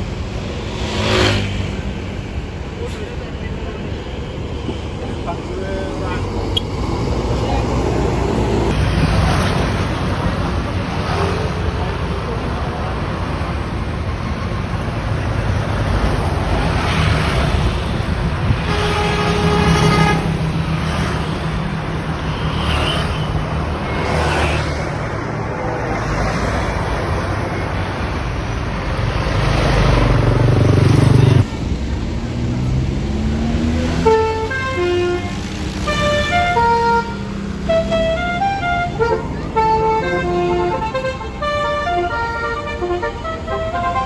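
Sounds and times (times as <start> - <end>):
bus engines running: 0.0 - 44.0
heavy road traffic: 0.0 - 44.0
horn blast: 18.5 - 20.6, 33.9 - 44.0.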